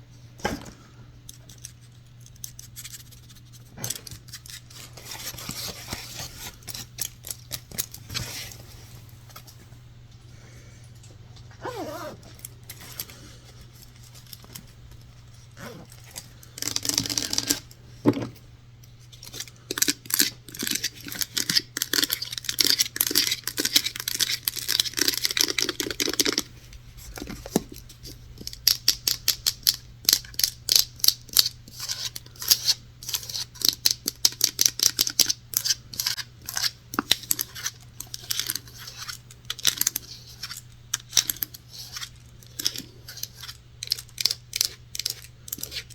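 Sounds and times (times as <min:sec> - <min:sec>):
steady low hum: 0:00.0 - 0:45.9
scratching on objects: 0:00.4 - 0:09.7, 0:19.0 - 0:45.9.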